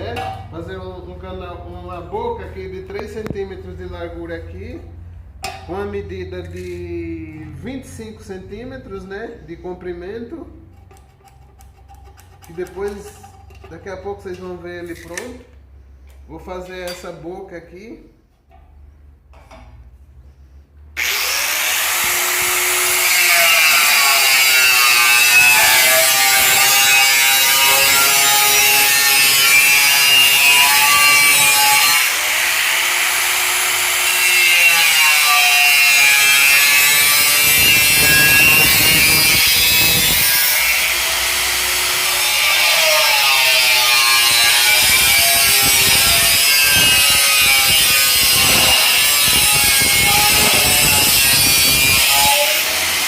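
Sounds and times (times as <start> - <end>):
angle grinder cutting metal: 21.0 - 53.0.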